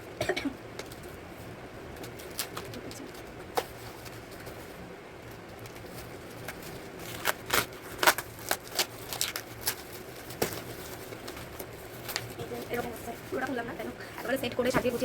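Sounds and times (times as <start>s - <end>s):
packaging crackling and clicking: 1.9s - 4.6s, 5.2s - 12.8s.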